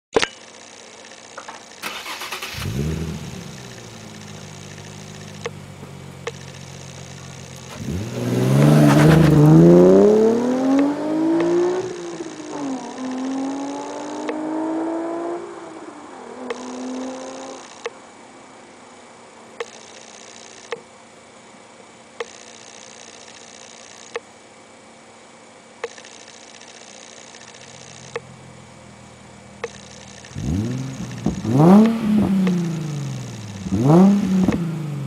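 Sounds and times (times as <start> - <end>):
car engine revving and idling: 1.8 - 17.9, 27.6 - 35.0.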